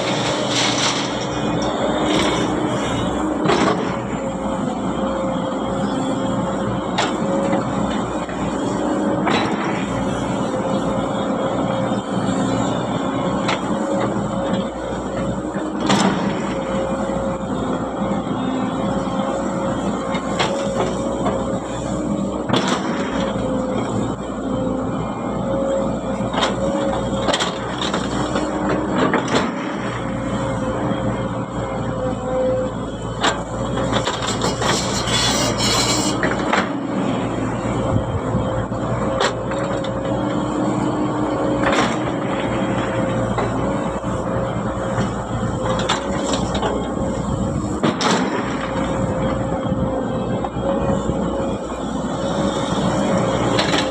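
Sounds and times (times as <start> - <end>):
heavy diesel machinery running: 0.0 - 53.9
machinery rattling: 33.0 - 44.0.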